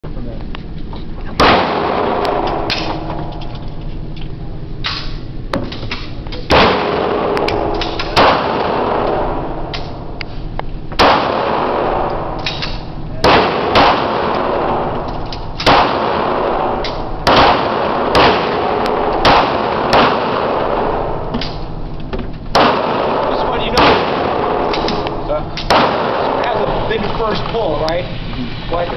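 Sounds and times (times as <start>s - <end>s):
pistol shots: 1.4s - 3.4s, 4.8s - 10.2s, 10.9s - 21.8s, 22.5s - 26.9s.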